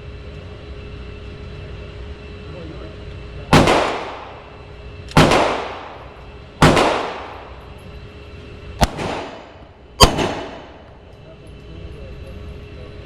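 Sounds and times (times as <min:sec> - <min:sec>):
pistol shots echoing: 0:03.5 - 0:04.5, 0:05.1 - 0:07.6, 0:08.8 - 0:10.8.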